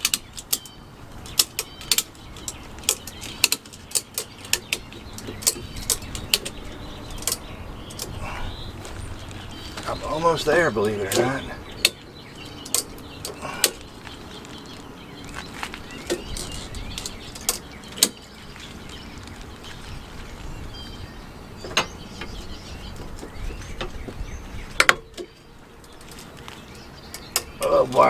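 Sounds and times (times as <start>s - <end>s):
ratchet strap clicking: 0.0s - 8.2s
faint birds chirping: 0.0s - 28.0s.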